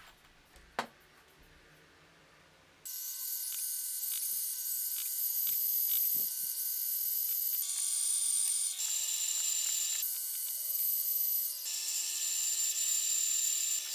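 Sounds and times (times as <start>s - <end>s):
wood router whining: 2.9s - 13.9s.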